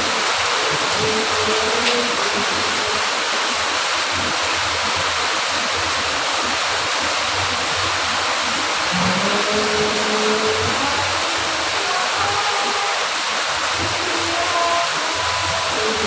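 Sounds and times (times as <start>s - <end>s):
heavy rain: 0.0s - 16.0s.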